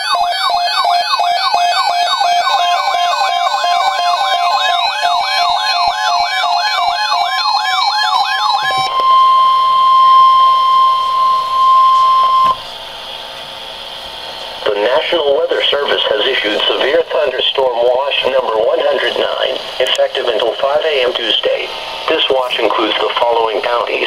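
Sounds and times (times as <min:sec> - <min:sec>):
electronic siren warble: 0:00.0 - 0:18.2
steady warning tone: 0:00.0 - 0:24.0.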